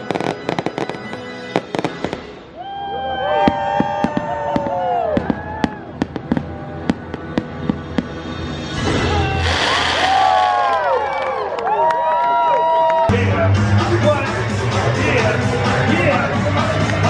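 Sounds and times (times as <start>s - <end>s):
fireworks bangs and crackles: 0.0s - 2.5s, 3.2s - 10.7s
loud music: 0.0s - 2.6s, 6.1s - 10.5s, 13.1s - 17.0s.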